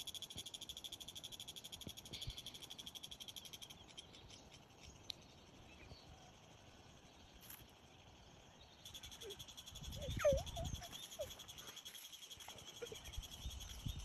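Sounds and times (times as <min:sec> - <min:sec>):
high-pitched animal trilling chorus: 0:08.9 - 0:13.6.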